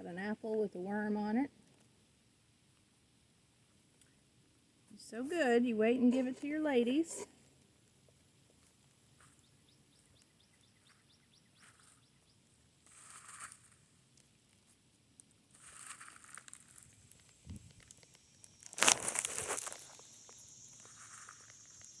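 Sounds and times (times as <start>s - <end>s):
rustling and crinkling: 11.6s - 12.2s, 12.8s - 22.0s.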